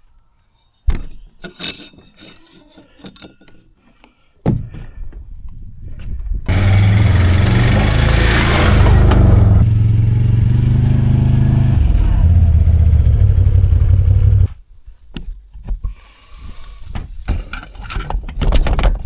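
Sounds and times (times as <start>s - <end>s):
atv engine running: 6.5s - 14.6s.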